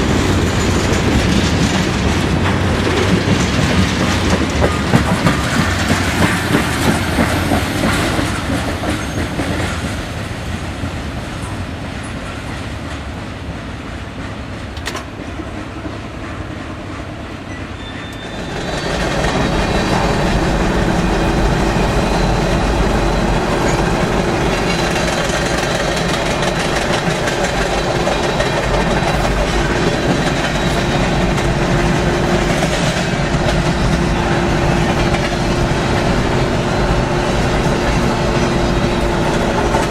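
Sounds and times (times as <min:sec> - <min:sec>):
freight train rumble: 0:00.0 - 0:39.9
train wheels clacking on rails: 0:00.0 - 0:39.9
faint steady squeal: 0:17.4 - 0:31.6.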